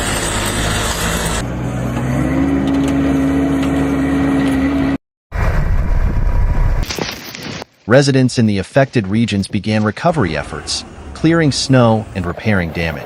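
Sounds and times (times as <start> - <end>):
road noise: 0.0 - 5.6, 9.0 - 13.0
vehicle engine: 0.0 - 6.8, 10.1 - 13.0.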